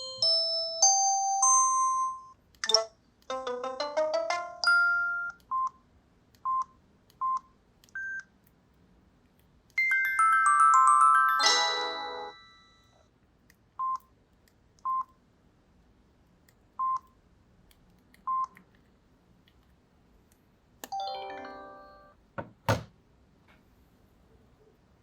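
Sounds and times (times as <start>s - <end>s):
polyphonic ringtone: 0.0s - 5.4s, 9.8s - 13.0s, 21.0s - 22.1s
falling chime: 9.9s - 13.0s, 21.0s - 22.1s.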